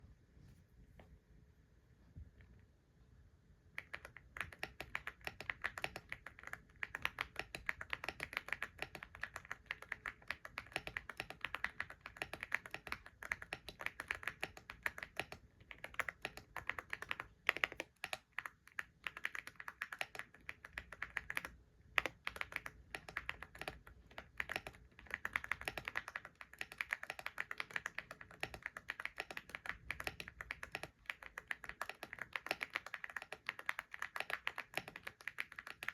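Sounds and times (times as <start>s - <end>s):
typing on computer keyboard: 3.8s - 35.9s.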